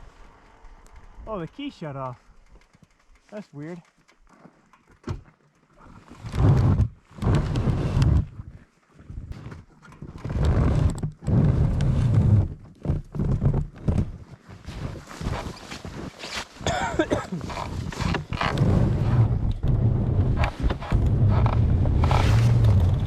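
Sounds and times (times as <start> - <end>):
snowmobile engine revving roughly: 17.5 - 23.0.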